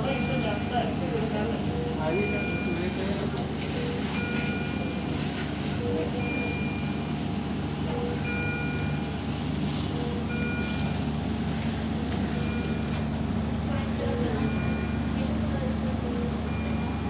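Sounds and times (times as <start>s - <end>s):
low machinery hum: 0.0s - 17.0s
electronic alarm beeps: 1.7s - 3.0s, 3.7s - 5.2s, 5.8s - 7.0s, 7.9s - 9.2s, 10.1s - 11.0s, 12.4s - 12.9s, 14.1s - 15.1s, 16.1s - 17.0s.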